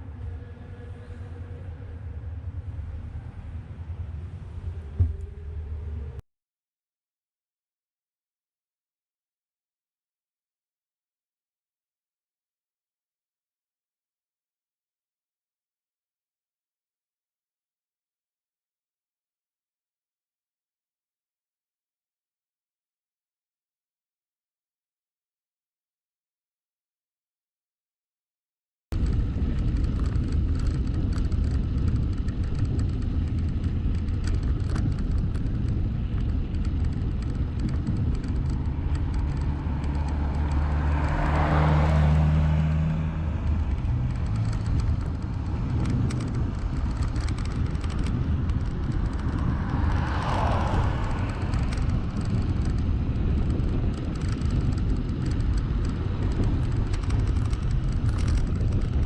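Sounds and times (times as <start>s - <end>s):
vehicles passing by: 0.0s - 6.2s, 29.0s - 59.0s
wind rumble on microphone: 0.0s - 6.2s, 28.9s - 59.0s.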